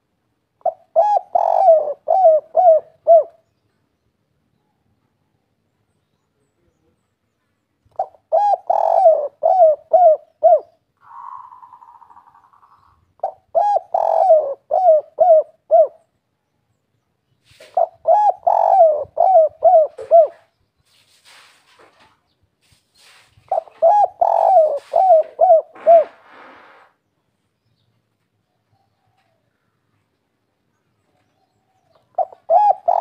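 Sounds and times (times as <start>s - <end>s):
dove cooing: 0.6s - 3.5s, 7.9s - 16.1s, 17.5s - 20.5s, 23.4s - 26.8s, 31.2s - 33.0s.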